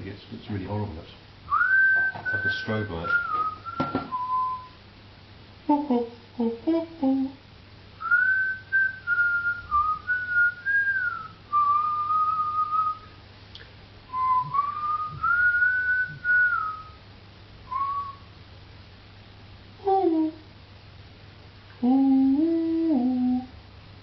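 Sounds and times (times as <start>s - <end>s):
person whistling a tune: 1.5s - 4.8s, 8.0s - 13.1s, 14.1s - 17.0s, 17.7s - 18.3s.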